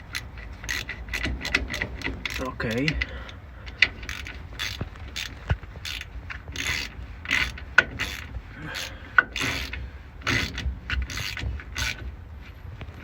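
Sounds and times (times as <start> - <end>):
ratchet wrench clicking: 0.0 - 12.0.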